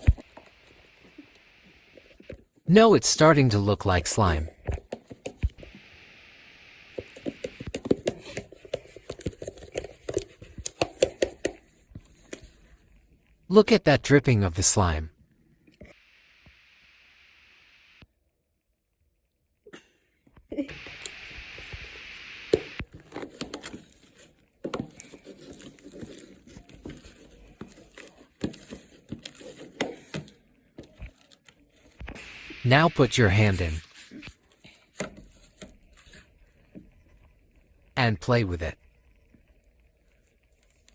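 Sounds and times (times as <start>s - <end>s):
steady hiss: 5.4s - 7.7s, 15.9s - 18.0s, 20.7s - 22.8s, 32.0s - 34.4s.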